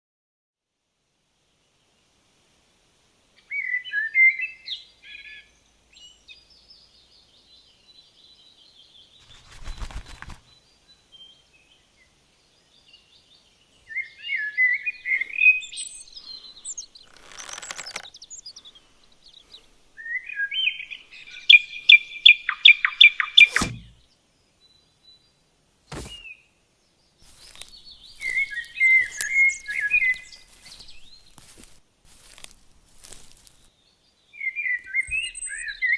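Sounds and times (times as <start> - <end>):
songbirds singing: 3.4 - 35.9
short sharp knocks: 23.4 - 24.0, 25.9 - 26.3.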